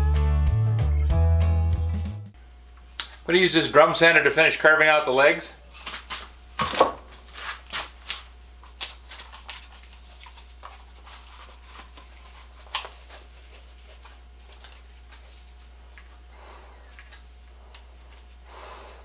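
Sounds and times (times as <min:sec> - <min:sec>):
low steady hum: 0:02.4 - 0:19.0.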